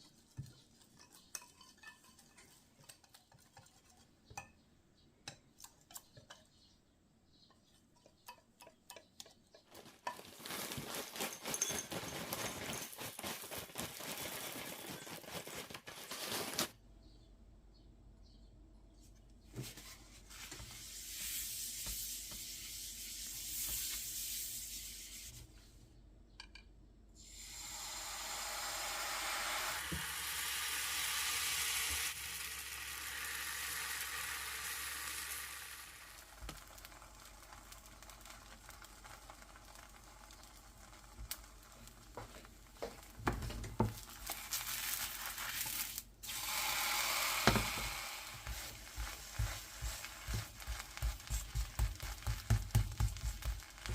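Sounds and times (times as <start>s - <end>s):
batter sizzling in oil: 20.4s - 25.4s, 27.2s - 53.9s.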